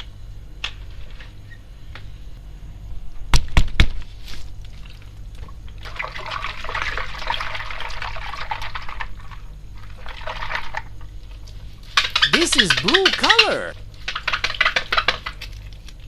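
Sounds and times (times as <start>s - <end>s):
water pouring and splashing: 4.7s - 11.0s.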